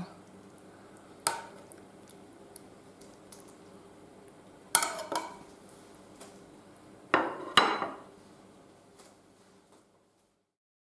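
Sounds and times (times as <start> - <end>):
dishes and cutlery clinking: 7.2 - 8.1.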